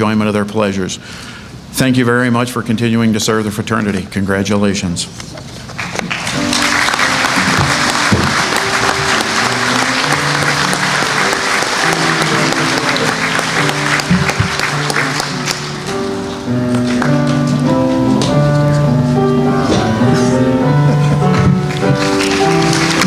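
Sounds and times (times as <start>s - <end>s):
audience applauding: 5.8s - 15.9s, 21.0s - 23.0s
instrumental music with held notes: 6.0s - 23.0s.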